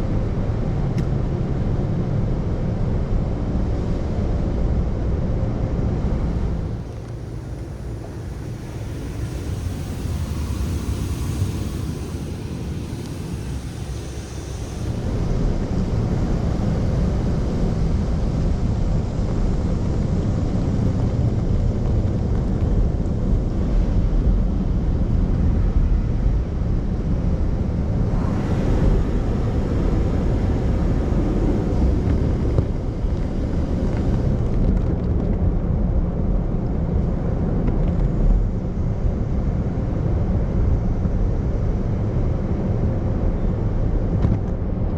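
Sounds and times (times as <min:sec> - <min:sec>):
car wash equipment rumbling: 0:05.7 - 0:15.5, 0:27.5 - 0:35.8.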